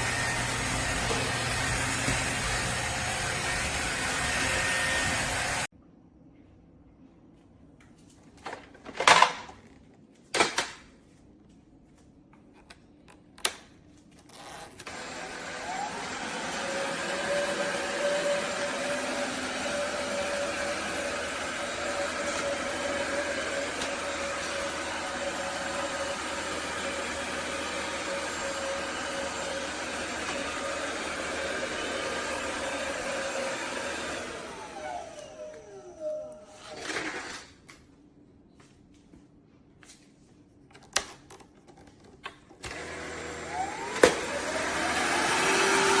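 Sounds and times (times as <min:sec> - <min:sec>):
stick vacuum motor running: 0:00.0 - 0:05.7, 0:14.4 - 0:37.4, 0:42.6 - 0:46.0.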